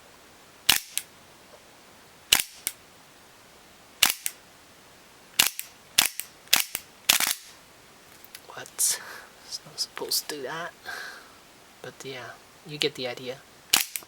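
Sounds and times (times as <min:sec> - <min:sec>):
gas pistol dry-firing pops: 0:00.7 - 0:01.1, 0:02.3 - 0:02.8, 0:04.0 - 0:04.4, 0:05.4 - 0:07.5, 0:13.7 - 0:14.0
pistol toggle clacking: 0:13.7 - 0:14.0.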